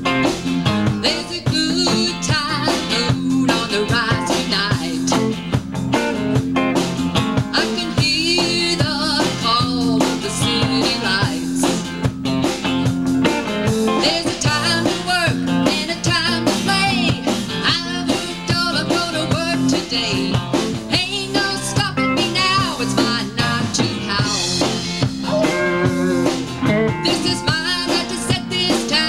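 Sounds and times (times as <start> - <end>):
electric guitar lines: 0.0 - 29.0
live rock band playing: 0.0 - 29.0
drum hits: 24.1 - 27.6.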